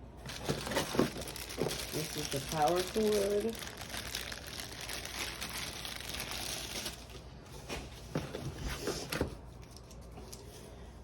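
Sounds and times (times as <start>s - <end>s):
plastic wrapping crinkling: 0.2s - 7.3s.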